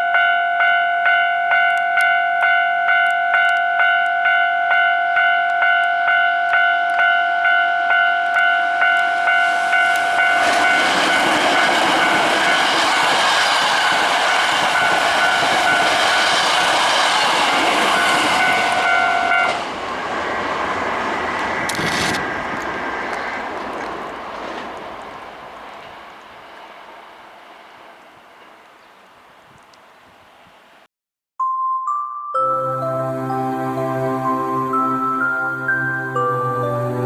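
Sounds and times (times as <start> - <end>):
level crossing bell ringing: 0.0 - 10.9, 17.8 - 19.6
train passing: 0.2 - 30.8.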